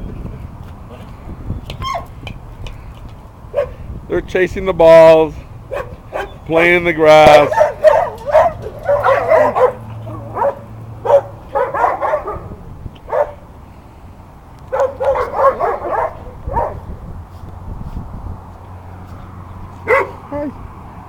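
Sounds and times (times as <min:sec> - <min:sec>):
small dogs yelping: 0:01.8 - 0:02.2, 0:05.7 - 0:06.4, 0:07.3 - 0:13.4, 0:14.7 - 0:17.0, 0:19.8 - 0:20.3.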